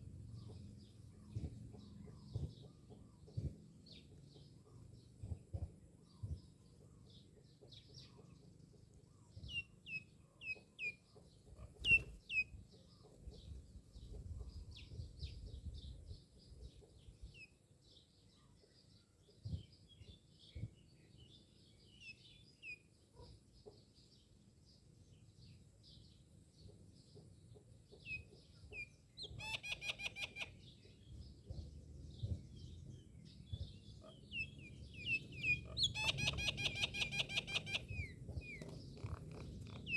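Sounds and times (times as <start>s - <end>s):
myna birds calling: 27.1s - 39.9s
faint low rumble: 30.7s - 36.3s.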